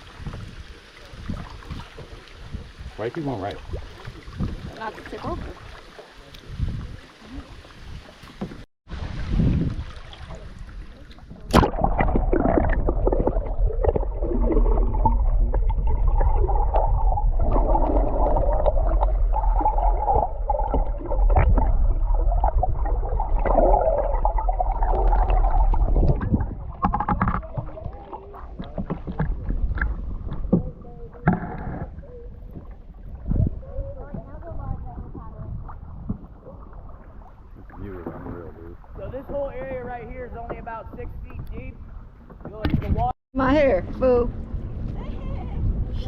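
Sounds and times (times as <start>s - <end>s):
paddle splashes: 0.0s - 44.2s
water sloshing and gurgling: 0.0s - 46.0s
heavy low rumble: 11.4s - 36.3s, 43.5s - 46.0s.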